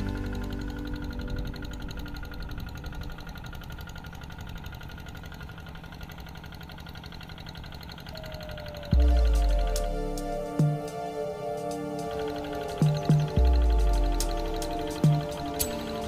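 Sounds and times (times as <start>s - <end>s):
tractor engine running: 0.0s - 16.0s
loud music: 9.0s - 16.0s.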